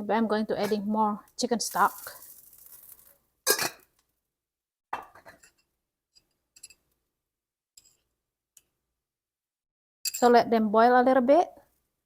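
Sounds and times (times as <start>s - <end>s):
kitchenware clinking: 0.6s - 0.9s, 1.7s - 3.9s, 5.0s - 5.7s.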